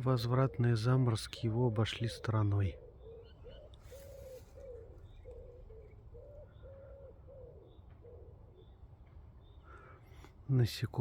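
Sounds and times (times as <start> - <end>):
small birds chirping: 0.0 - 11.0
bird cooing: 1.3 - 8.8.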